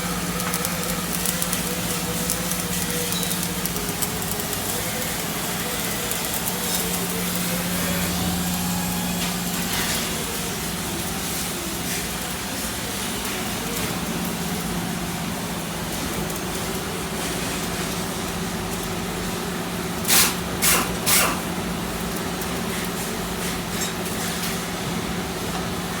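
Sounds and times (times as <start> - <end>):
machine hum: 0.0 - 17.2.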